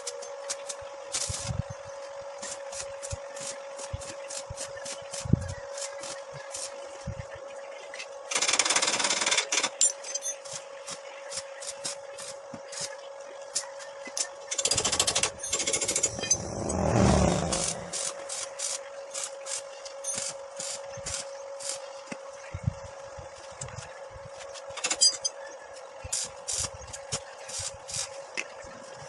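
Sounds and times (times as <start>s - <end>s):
metalworking tool hum: 14.5s - 18.6s.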